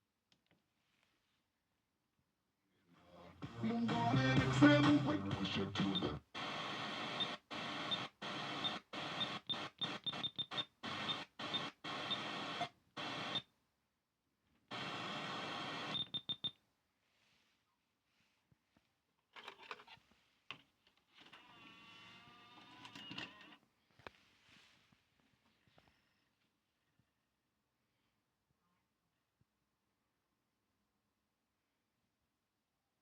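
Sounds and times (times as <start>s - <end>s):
radio static hiss: 5.7s - 9.8s, 10.9s - 13.4s, 14.7s - 16.0s.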